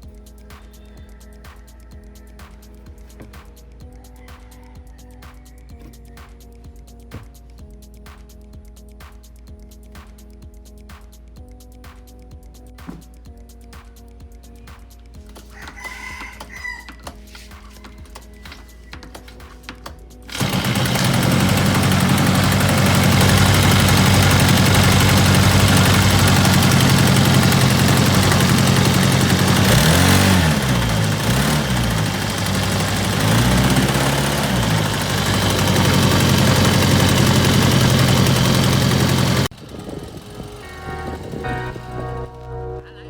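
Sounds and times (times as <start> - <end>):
small engine at high revs: 20.3 - 42.2.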